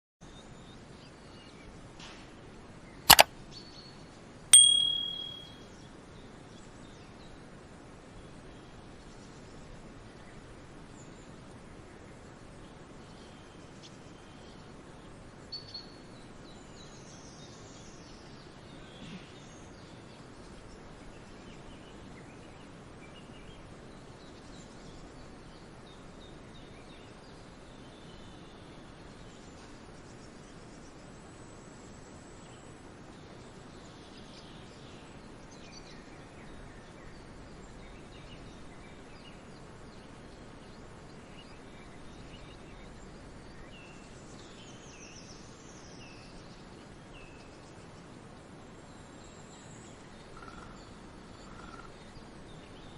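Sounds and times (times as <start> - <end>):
sharp clicks: 4.6 - 5.5.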